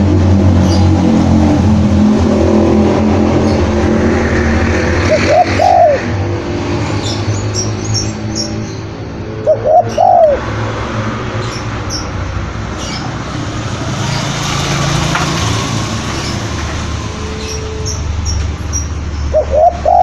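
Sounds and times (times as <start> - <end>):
dove cooing: 5.0 - 6.2, 9.0 - 11.0, 19.3 - 20.0
small birds chirping: 6.9 - 10.4, 11.4 - 15.0.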